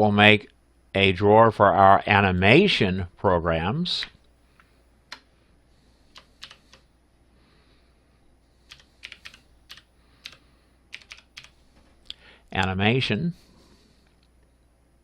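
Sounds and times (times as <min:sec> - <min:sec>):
typing on computer keyboard: 0:06.1 - 0:06.8, 0:08.7 - 0:11.6.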